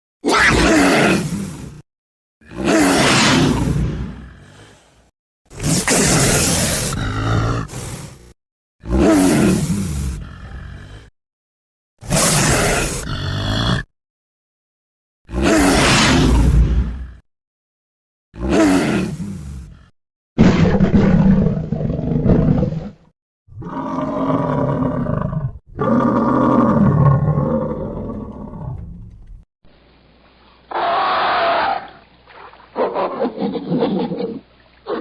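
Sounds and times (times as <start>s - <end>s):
creature roars: 0.2s - 1.6s, 2.4s - 4.8s, 5.6s - 11.1s, 12.0s - 13.9s, 15.3s - 17.2s, 18.4s - 28.8s, 30.7s - 32.0s.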